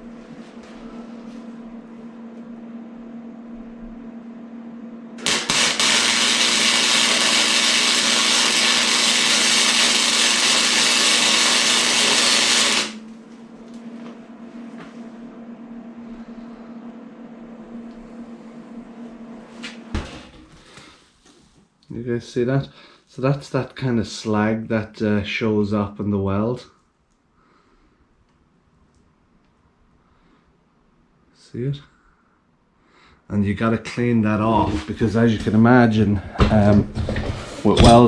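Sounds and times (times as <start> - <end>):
steady low hum: 0.0 - 38.0
welding arc sizzling: 5.2 - 13.1.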